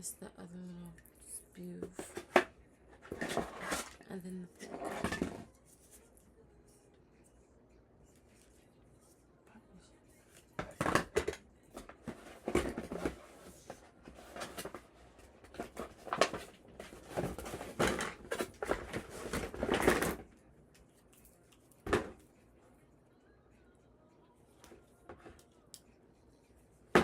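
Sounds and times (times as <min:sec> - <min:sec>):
rustling handling noises: 0:10.2 - 0:22.4.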